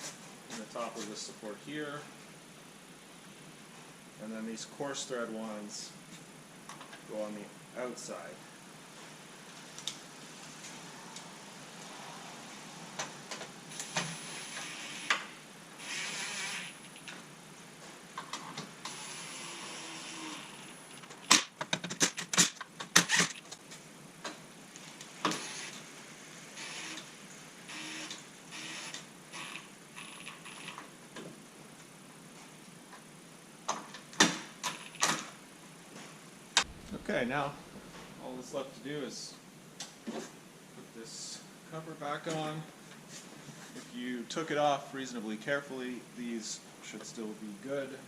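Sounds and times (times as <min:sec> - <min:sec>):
power tool driving bolts: 0:13.7 - 0:17.1, 0:18.8 - 0:23.4, 0:25.2 - 0:25.8
sharp clicks and knocks: 0:21.0 - 0:23.6.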